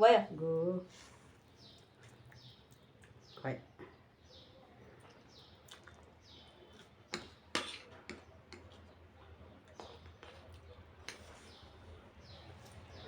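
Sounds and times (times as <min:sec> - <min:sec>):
noodle eating sounds: 0:05.0 - 0:11.7.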